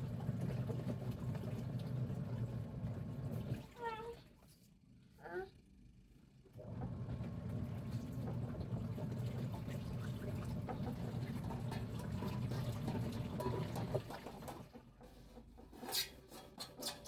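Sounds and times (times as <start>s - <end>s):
water running: 6.9s - 14.7s.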